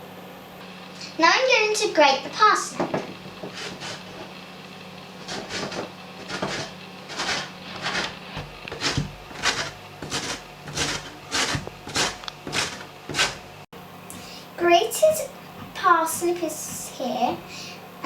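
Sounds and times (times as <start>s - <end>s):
parsnip scraping on grater: 3.2s - 4.4s, 5.2s - 13.5s.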